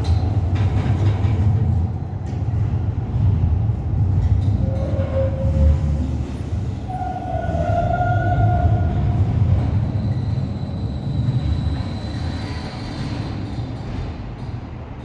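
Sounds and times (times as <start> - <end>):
tram rumbling: 0.0 - 15.0.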